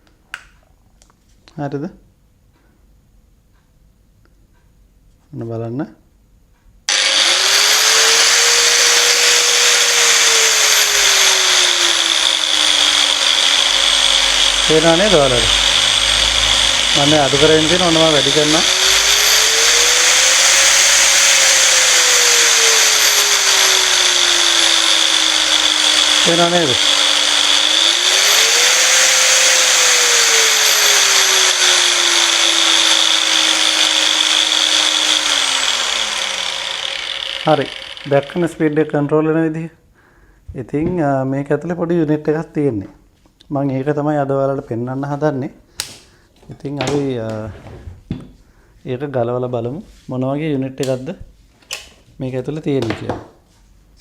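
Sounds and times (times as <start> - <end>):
electric grinder motor whine: 6.9 - 38.9.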